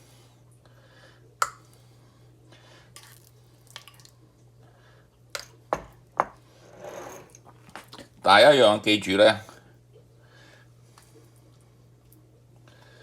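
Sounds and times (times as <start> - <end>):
low steady hum: 0.0 - 13.0
soft scraping: 6.5 - 7.4.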